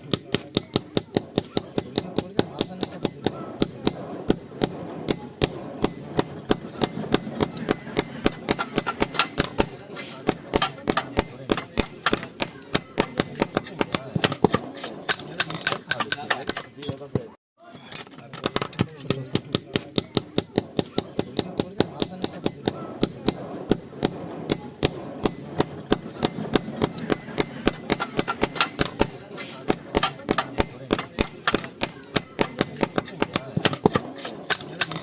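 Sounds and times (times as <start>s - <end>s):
anvil ringing: 0.0s - 17.2s, 18.3s - 35.0s
hammer striking metal on anvil: 0.0s - 17.3s, 18.3s - 35.0s.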